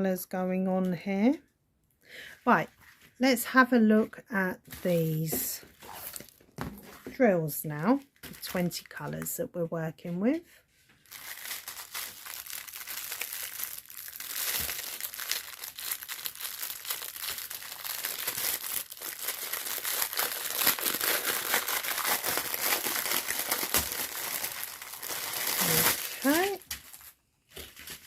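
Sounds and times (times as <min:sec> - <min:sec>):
plastic bags crinkling: 0:08.0 - 0:09.0, 0:11.0 - 0:28.0.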